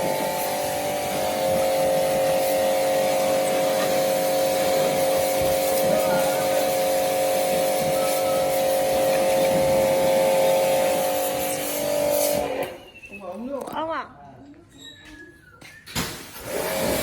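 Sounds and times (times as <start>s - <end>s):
motor humming steadily: 0.0s - 12.6s.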